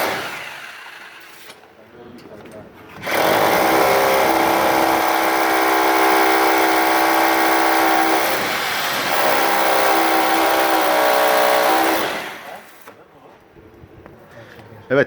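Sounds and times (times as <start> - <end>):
power tool motor whining: 3.0 - 12.9.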